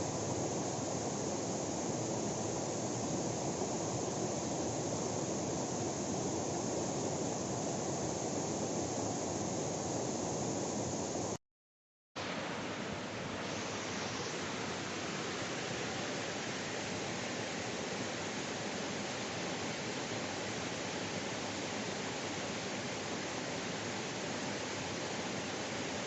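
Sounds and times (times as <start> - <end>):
waterfall roar: 12.2 - 26.0.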